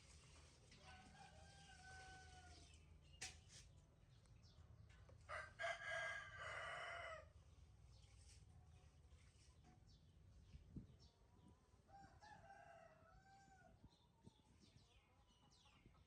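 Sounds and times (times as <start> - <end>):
rooster crowing: 5.3 - 7.3, 11.9 - 13.7.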